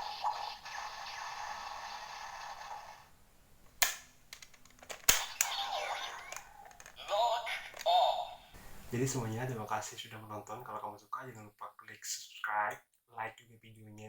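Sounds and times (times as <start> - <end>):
plastic clicks and snaps: 3.7 - 5.6, 6.2 - 8.0
toy electronic sound effect: 5.2 - 7.9.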